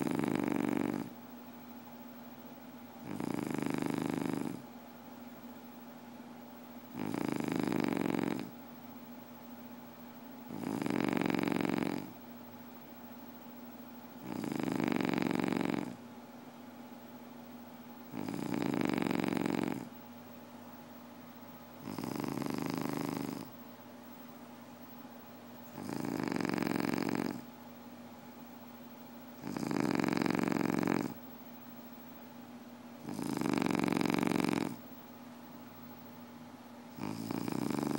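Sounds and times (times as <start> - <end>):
person snoring: 0.0 - 1.1, 3.0 - 4.6, 6.9 - 8.5, 10.5 - 12.1, 14.2 - 16.0, 18.1 - 19.9, 21.8 - 23.5, 25.7 - 27.5, 29.4 - 31.2, 33.0 - 34.8, 37.0 - 37.9
steady low hum: 0.0 - 37.9.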